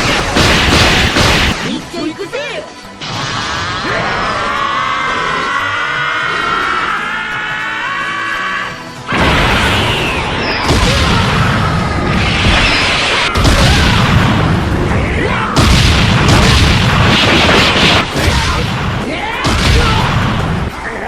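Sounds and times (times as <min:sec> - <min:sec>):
booming impacts and blasts: 0:00.0 - 0:01.9, 0:09.1 - 0:20.9.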